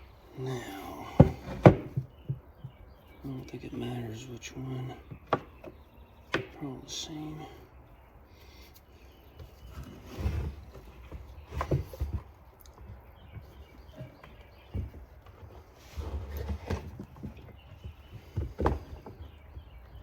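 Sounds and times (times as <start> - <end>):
knocks of parts and tools: 1.0 - 2.8, 5.1 - 6.6.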